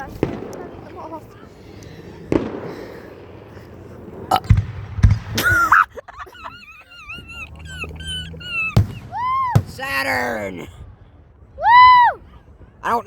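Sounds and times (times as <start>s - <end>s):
distant firework booms: 0.0s - 5.7s, 7.2s - 11.6s
firework crack: 0.0s - 13.0s
firework whistle: 7.1s - 10.0s.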